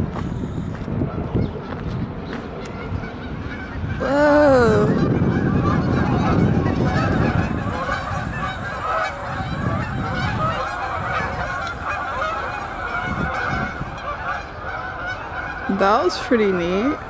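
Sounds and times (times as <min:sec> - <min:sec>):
geese honking: 0:05.8 - 0:16.0.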